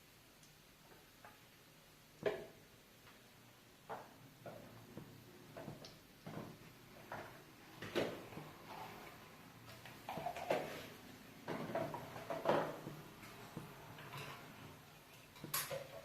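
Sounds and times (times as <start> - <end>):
kitchen utensils knocking and scraping: 10.0 - 14.6, 15.2 - 16.0.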